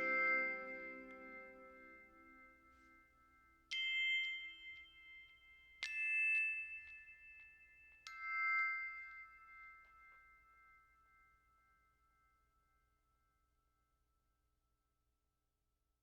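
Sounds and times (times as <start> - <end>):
bell-like struck notes: 0.0 - 11.7.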